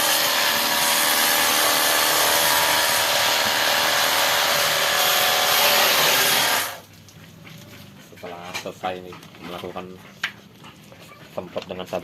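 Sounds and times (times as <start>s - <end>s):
electric pump motor whining: 0.0s - 6.9s.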